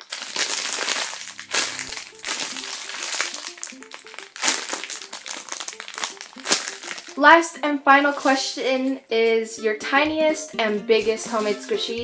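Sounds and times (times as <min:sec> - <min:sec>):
plastic packaging crinkling: 0:00.0 - 0:07.3, 0:08.0 - 0:08.6
quiet background music: 0:00.2 - 0:12.0.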